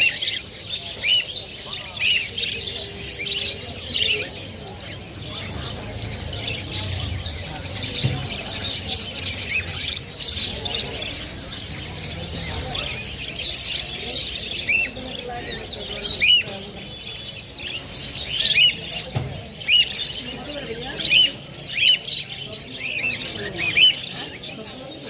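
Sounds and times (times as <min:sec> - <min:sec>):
caged birds chirping and squawking: 0:00.0 - 0:25.0
low background murmur: 0:00.0 - 0:25.0.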